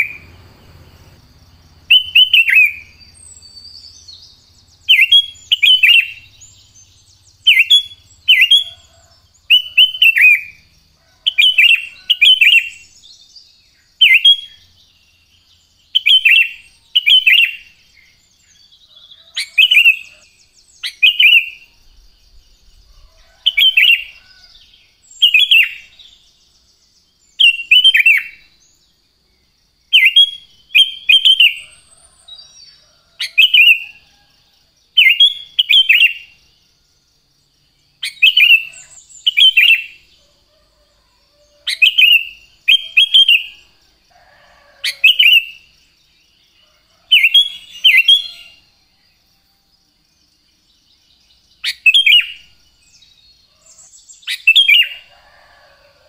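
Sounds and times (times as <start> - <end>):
bird whistling phrases: 1.9 - 3.0.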